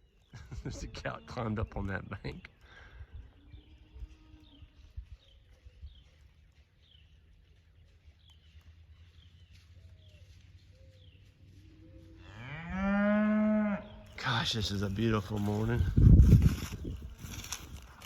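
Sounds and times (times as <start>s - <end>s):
cow mooing: 12.0s - 14.0s.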